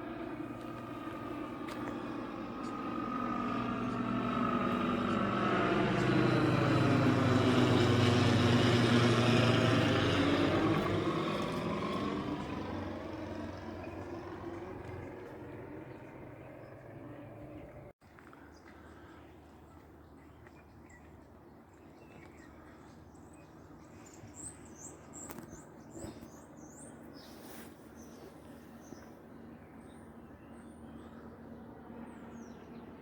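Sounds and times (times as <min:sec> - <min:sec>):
propeller aircraft flying overhead: 0:00.0 - 0:33.0.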